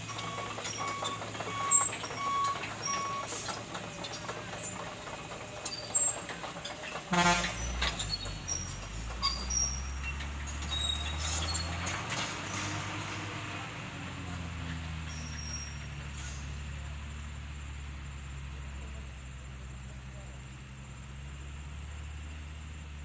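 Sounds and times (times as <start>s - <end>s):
reversing alarm beeps: 0.0s - 3.4s
heavy engine rumble: 0.0s - 23.0s
horn toot: 7.1s - 8.1s.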